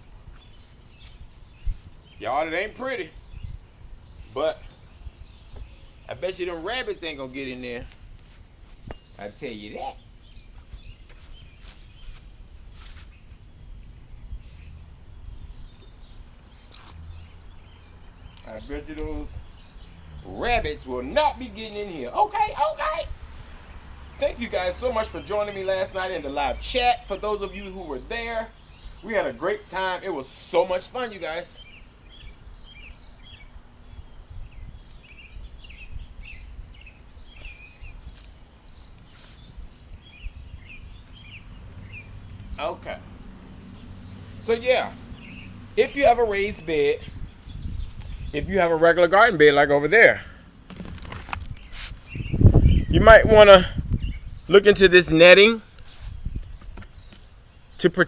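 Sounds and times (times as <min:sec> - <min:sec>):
songbirds chirping: 0:00.0 - 0:58.0
short rustling noises: 0:10.5 - 0:13.4, 0:50.6 - 0:52.6.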